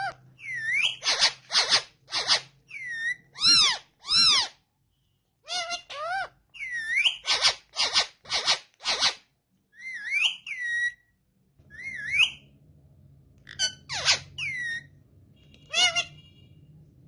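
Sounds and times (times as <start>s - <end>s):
parrots squawking: 0.0s - 4.6s, 5.4s - 11.1s, 11.7s - 12.5s, 13.4s - 15.0s, 15.6s - 16.3s
parrots whistling: 0.0s - 4.6s, 5.4s - 9.2s, 9.8s - 11.1s, 11.7s - 12.5s, 13.4s - 15.0s, 15.7s - 16.2s.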